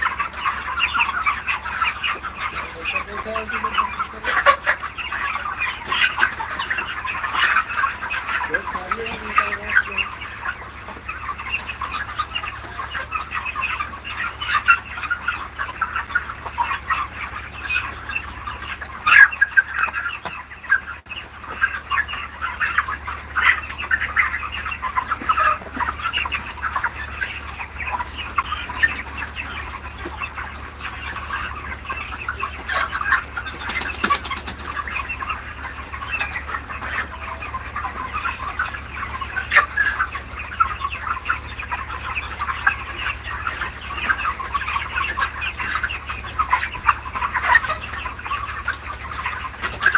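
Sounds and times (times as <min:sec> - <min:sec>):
chickens clucking: 0:00.0 - 0:49.9
wings flapping: 0:33.2 - 0:35.1.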